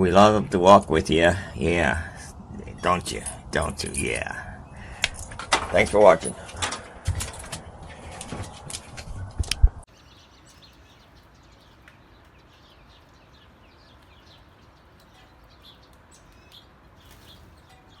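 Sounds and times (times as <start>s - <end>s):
small birds chirping: 0.0s - 18.0s.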